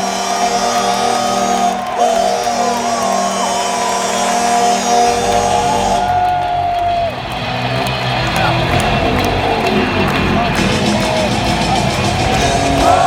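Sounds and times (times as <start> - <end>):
goal horn blaring: 0.0 - 8.2
crowd cheering and whooping: 0.0 - 13.0
deep music: 0.0 - 13.0.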